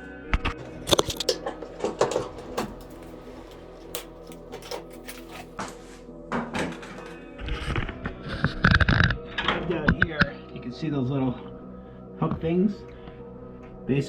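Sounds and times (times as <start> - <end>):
clicks and knocks of handling panel: 0.6 - 5.7.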